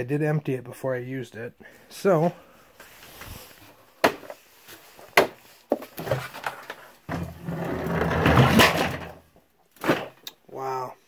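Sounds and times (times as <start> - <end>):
contents scraping and rattling: 5.9 - 9.2.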